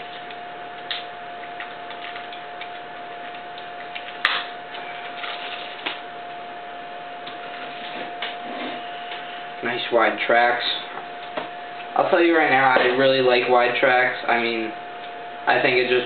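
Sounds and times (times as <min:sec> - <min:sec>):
steady high hum: 0:00.0 - 0:16.0.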